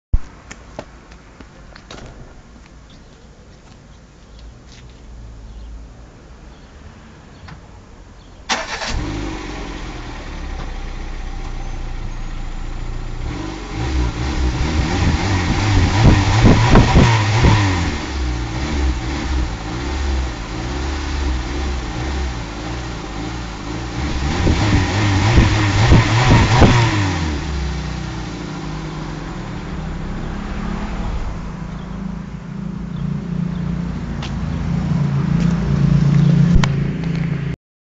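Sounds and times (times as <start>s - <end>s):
car engine idling and revving: 8.2s - 37.6s.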